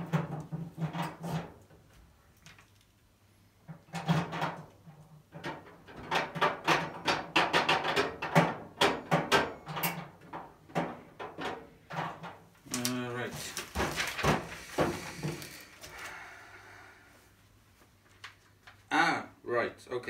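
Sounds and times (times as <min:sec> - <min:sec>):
knocks clicks and rustles: 0:00.0 - 0:03.0, 0:03.7 - 0:16.0.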